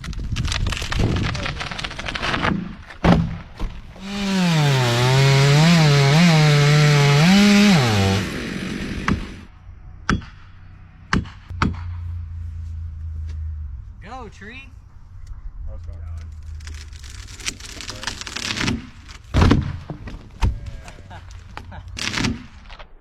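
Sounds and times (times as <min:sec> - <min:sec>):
crackling: 0:00.0 - 0:03.0, 0:16.0 - 0:19.3
chainsaw revving and cutting: 0:04.0 - 0:09.5.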